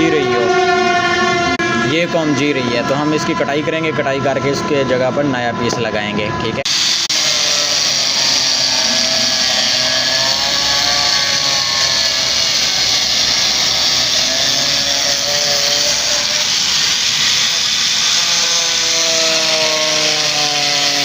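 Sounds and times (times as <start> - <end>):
power cutting tool whining: 6.6 - 21.0.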